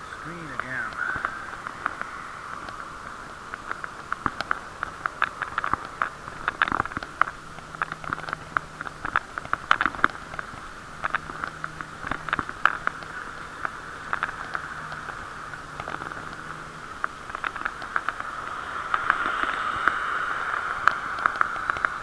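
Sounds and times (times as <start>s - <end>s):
irregular clicks and taps: 0.0s - 22.0s
muffled bicycle riding hiss: 0.0s - 22.0s.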